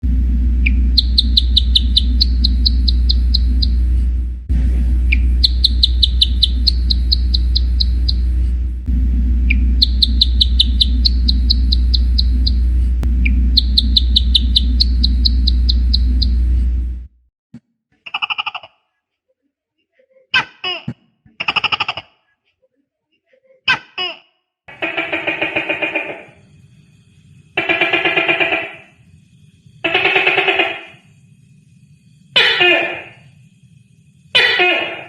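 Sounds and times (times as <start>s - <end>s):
steady low hum: 0.0s - 17.3s, 24.7s - 35.0s
gecko chirping: 0.6s - 3.9s, 5.0s - 8.4s, 9.5s - 16.5s.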